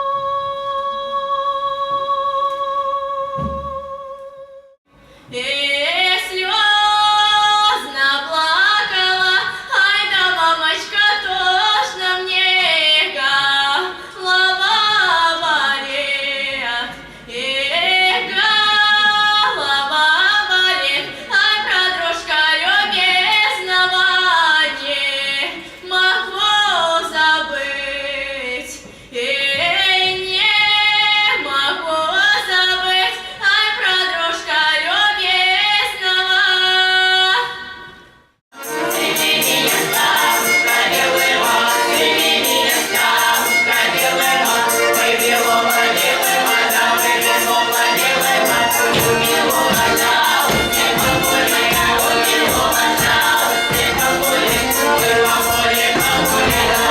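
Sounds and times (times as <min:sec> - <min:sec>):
choir singing with instruments: 0:38.5 - 0:56.9
steady beat: 0:38.6 - 0:56.9.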